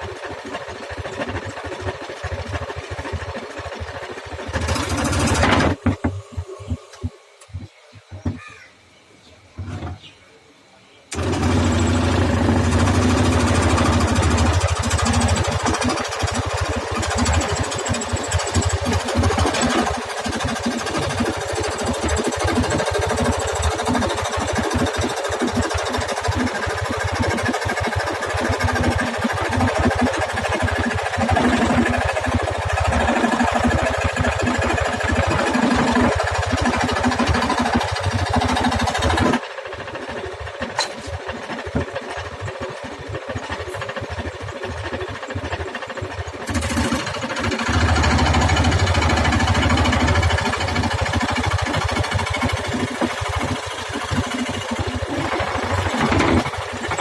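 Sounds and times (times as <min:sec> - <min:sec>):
jigsaw cutting wood: 0:00.0 - 0:05.9, 0:11.1 - 0:39.4, 0:46.4 - 0:57.0.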